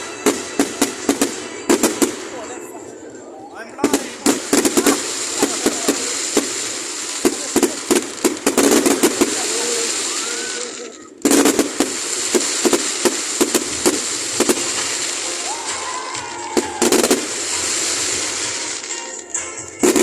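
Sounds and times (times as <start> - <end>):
fireworks bangs: 0.0 - 3.1, 3.7 - 19.2, 19.8 - 20.0
fireworks crackling: 0.0 - 20.0.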